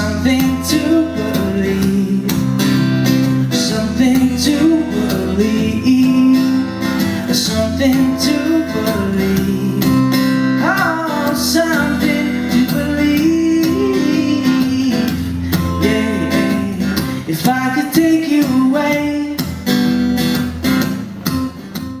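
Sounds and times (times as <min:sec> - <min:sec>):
man singing: 0:00.0 - 0:19.6
acoustic guitar strumming: 0:00.0 - 0:22.0.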